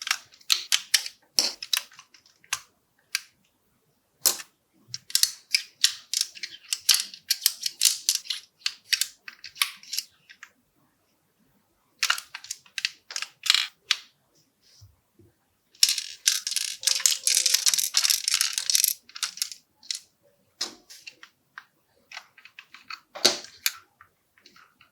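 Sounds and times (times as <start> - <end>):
plastic pieces clicking and rattling: 0.0 - 3.3, 4.3 - 10.5, 12.0 - 14.1, 15.8 - 20.1, 20.8 - 23.8.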